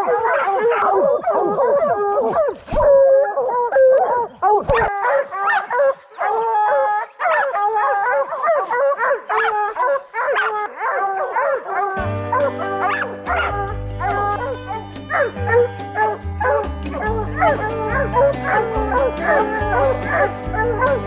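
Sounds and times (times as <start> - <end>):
hounds baying and yipping: 0.0 - 21.0
background music: 11.9 - 21.0.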